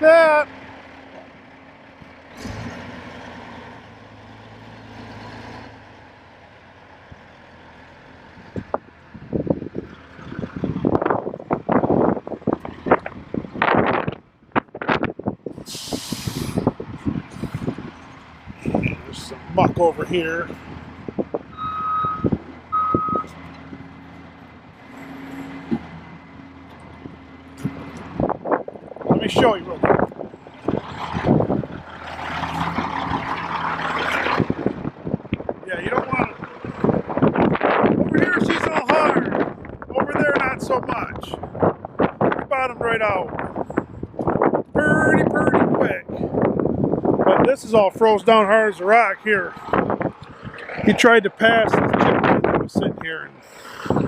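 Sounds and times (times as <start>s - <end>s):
heavy diesel engine running: 0.0s - 42.0s
backup alarm beeping: 21.6s - 23.3s.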